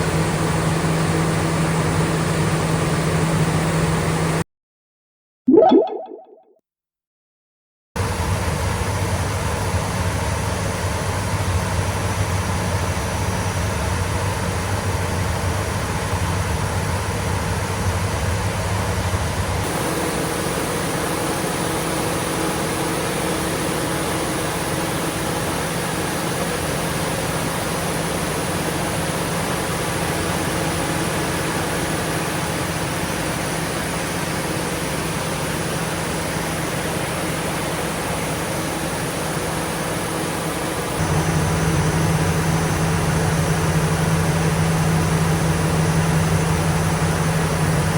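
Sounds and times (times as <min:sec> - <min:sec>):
diesel generator running: 0:41.0 - 0:47.9.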